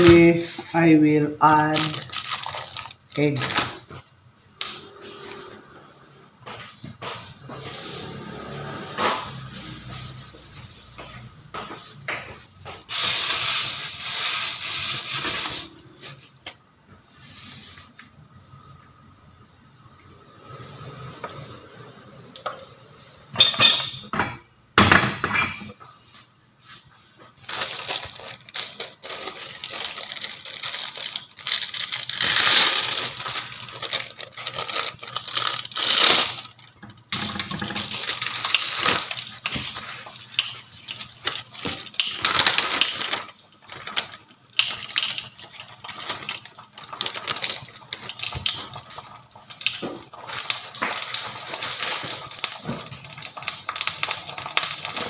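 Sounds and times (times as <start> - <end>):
food rustling: 0.0 - 4.1, 26.6 - 55.0
cookware clattering: 23.4 - 24.4.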